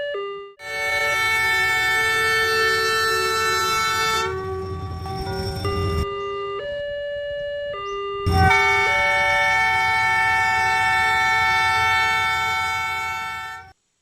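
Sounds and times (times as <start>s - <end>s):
train horn chords: 0.6s - 6.0s, 8.3s - 13.8s.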